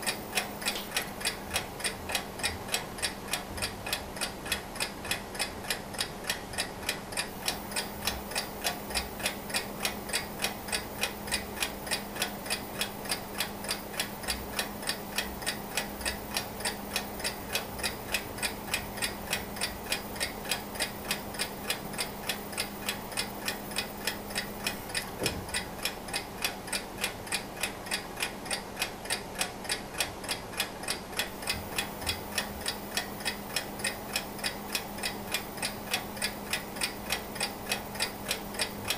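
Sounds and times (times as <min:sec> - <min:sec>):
mechanical alarm clock ticking: 0:00.0 - 0:38.9.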